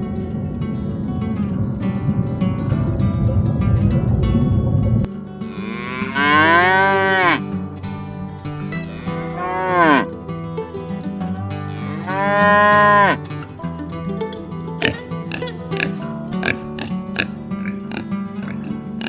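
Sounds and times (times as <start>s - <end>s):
faint background music: 0.0s - 19.0s
animal calling: 5.5s - 10.2s, 11.5s - 13.5s, 14.8s - 19.0s.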